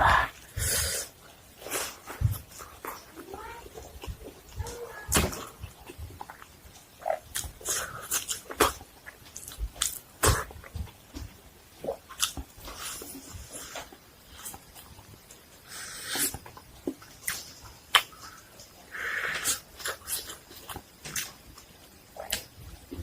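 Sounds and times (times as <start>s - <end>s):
person chewing and crunching food: 0.0s - 23.0s.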